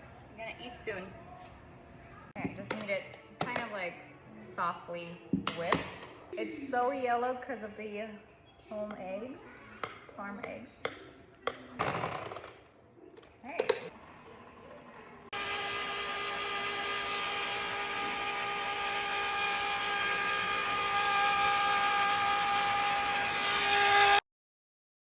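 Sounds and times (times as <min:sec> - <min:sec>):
electric mixer whine: 0:15.3 - 0:24.2.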